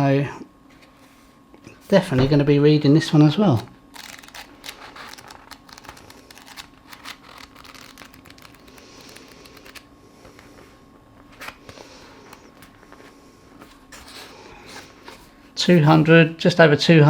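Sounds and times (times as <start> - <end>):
book pages flicking: 3.6 - 9.9.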